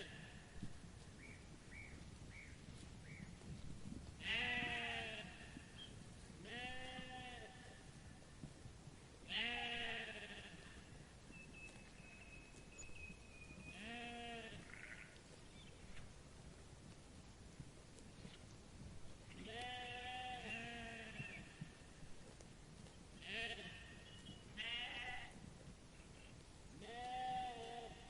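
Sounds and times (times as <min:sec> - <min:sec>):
sheep bleating: 0:04.2 - 0:05.7, 0:06.4 - 0:07.8, 0:09.3 - 0:10.9, 0:13.7 - 0:15.2, 0:19.3 - 0:21.5, 0:23.2 - 0:25.4, 0:26.8 - 0:28.0.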